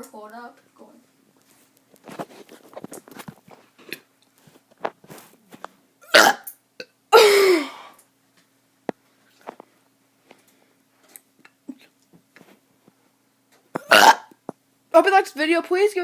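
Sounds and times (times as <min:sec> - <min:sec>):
child burping: 0:06.1 - 0:08.0, 0:13.8 - 0:14.4.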